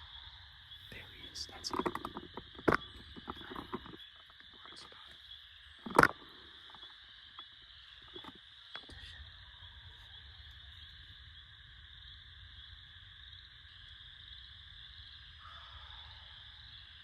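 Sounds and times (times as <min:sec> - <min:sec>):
distant frogs chorus: 0:00.0 - 0:17.0.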